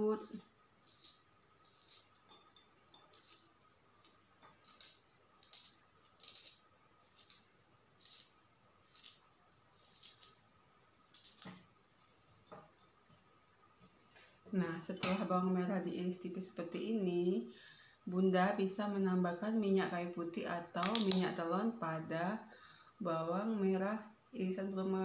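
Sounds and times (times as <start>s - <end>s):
knife slicing shallot: 0.2s - 2.2s, 3.1s - 10.4s, 11.1s - 11.6s.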